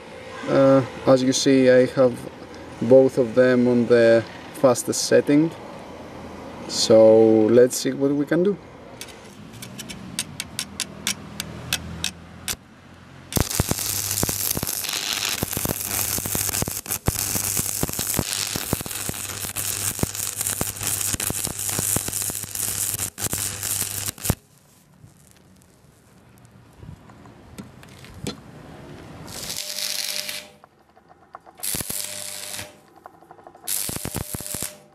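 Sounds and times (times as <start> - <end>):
welder low hum: 13.3 - 25.9, 29.2 - 30.7, 31.5 - 33.0, 33.6 - 34.9
arc welding crackling and hissing: 13.3 - 26.7, 29.3 - 30.6, 31.6 - 32.9, 33.7 - 34.9.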